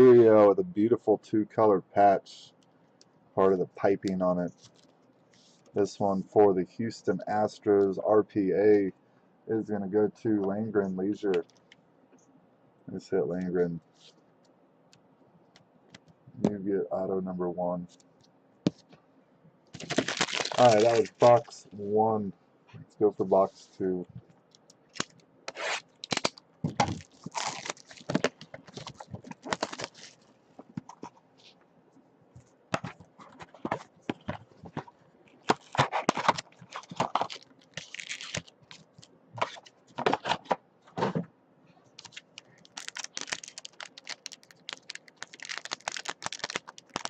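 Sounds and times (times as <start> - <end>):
plastic wrapper crackling and tearing: 19.8 - 21.4, 24.9 - 30.2, 35.4 - 39.1, 42.0 - 47.0.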